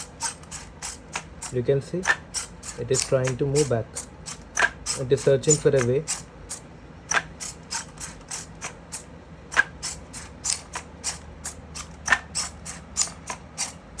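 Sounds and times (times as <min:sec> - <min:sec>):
faint steady hum: 0:00.0 - 0:14.0
robot legs and servos clicking: 0:00.0 - 0:14.0.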